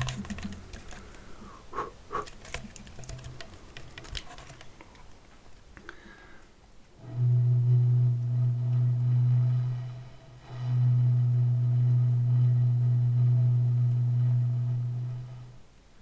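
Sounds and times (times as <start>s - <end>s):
hollow hoot blown across bottle: 1.5s - 2.4s, 7.0s - 15.7s.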